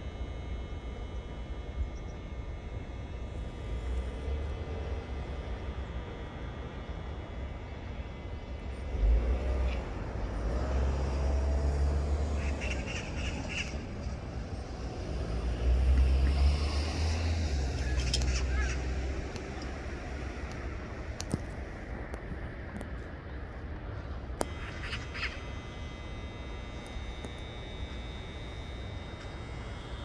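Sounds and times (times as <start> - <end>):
birds calling: 11.3 - 16.4, 17.2 - 21.0, 24.4 - 29.1.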